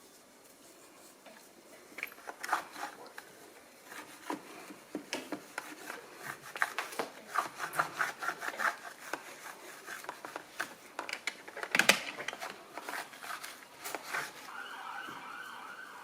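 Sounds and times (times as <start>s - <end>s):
cloth scrubbing hard plastic: 0.6s - 16.0s.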